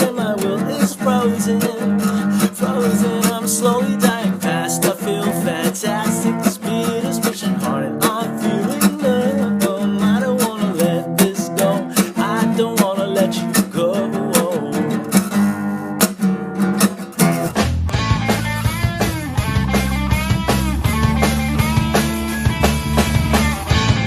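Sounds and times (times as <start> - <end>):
bending melodic lead guitar: 0.0 - 24.0
strummed acoustic guitar: 0.0 - 24.0
heavy bass rock music: 17.3 - 24.0.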